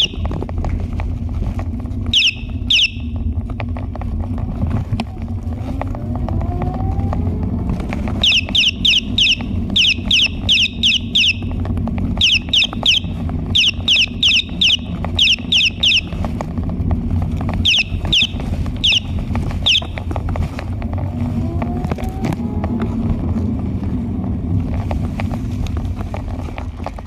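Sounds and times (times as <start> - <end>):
steady low rumble: 0.0 - 27.0
chirping phone ringtone: 2.2 - 3.1, 8.2 - 11.5, 12.2 - 16.2, 17.6 - 20.0.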